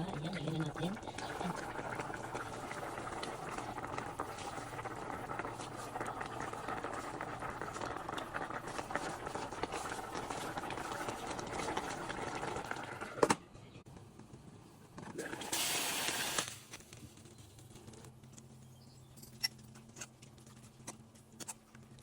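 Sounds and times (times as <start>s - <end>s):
soup boiling and bubbling: 0.0s - 13.4s, 14.2s - 18.0s.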